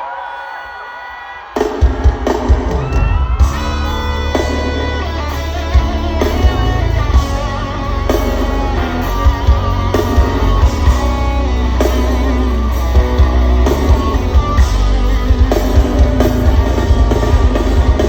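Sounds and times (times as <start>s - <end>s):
band music over sound system: 0.0s - 18.0s
electric guitar: 2.8s - 18.0s
heavy thumping bass: 3.2s - 18.0s.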